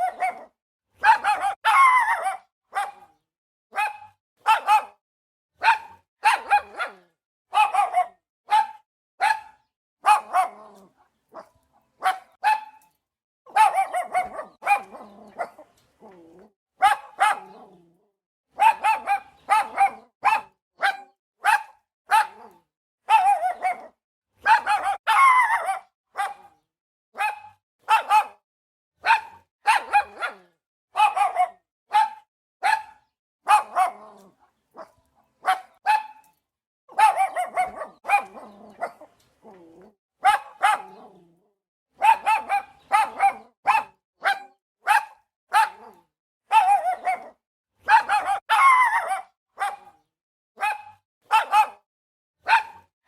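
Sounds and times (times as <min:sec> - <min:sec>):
dog barking: 0:00.0 - 0:05.0, 0:05.6 - 0:12.9, 0:13.5 - 0:16.2, 0:16.8 - 0:17.9, 0:18.5 - 0:28.4, 0:29.0 - 0:36.3, 0:36.9 - 0:41.3, 0:41.9 - 0:52.9.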